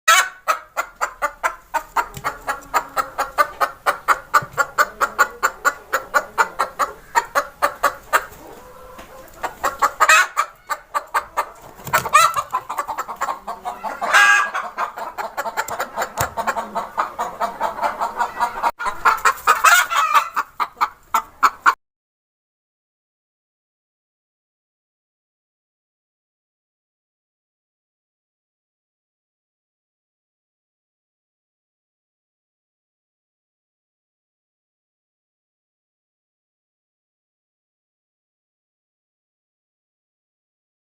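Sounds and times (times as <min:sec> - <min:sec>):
hen clucking: 0:00.1 - 0:21.8.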